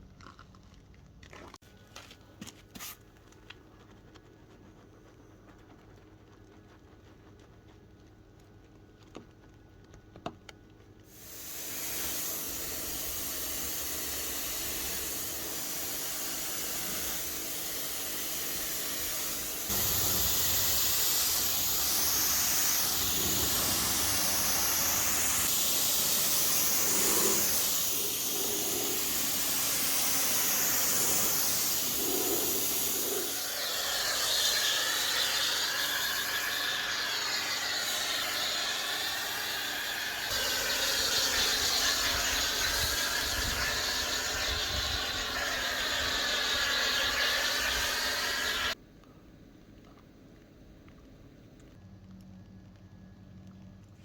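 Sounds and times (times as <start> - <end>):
pressure washer spraying car: 11.1 - 48.8.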